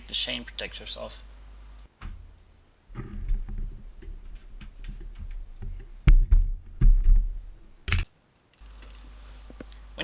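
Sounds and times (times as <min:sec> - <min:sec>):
heavy dull thumps: 0:02.0 - 0:08.0.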